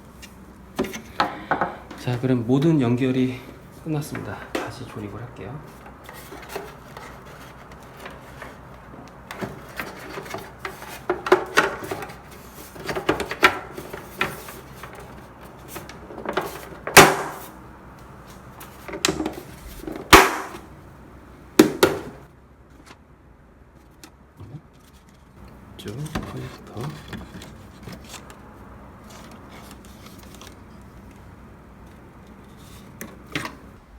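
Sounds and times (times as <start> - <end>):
machine parts knocking and rattling: 5.7 - 17.5, 18.3 - 20.8
sharp loud knocks: 16.9 - 17.5, 20.1 - 20.7.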